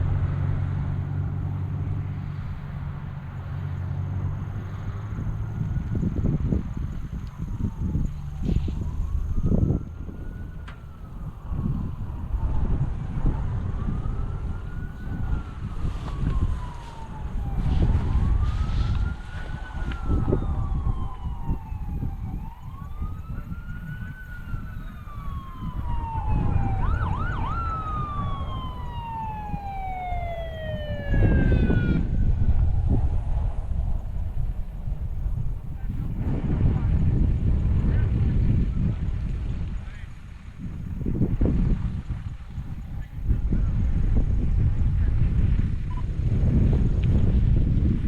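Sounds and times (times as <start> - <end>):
emergency siren wailing: 0.0 - 37.6, 40.6 - 44.5
low rumble: 0.0 - 48.0
higher-pitched siren sweeping down: 4.2 - 36.2
siren yelps: 4.4 - 36.0.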